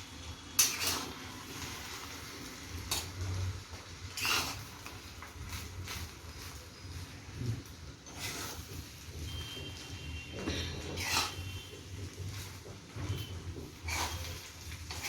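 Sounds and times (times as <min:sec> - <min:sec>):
metal utensil scraping a pan: 0:00.5 - 0:01.4, 0:02.8 - 0:03.3, 0:04.1 - 0:05.0, 0:08.0 - 0:09.6, 0:10.3 - 0:15.0.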